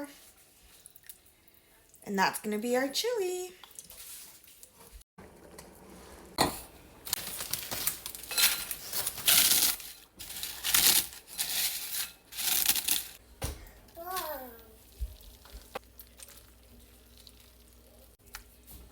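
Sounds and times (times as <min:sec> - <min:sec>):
metal spoon scraping metal pot: 0:08.2 - 0:13.2.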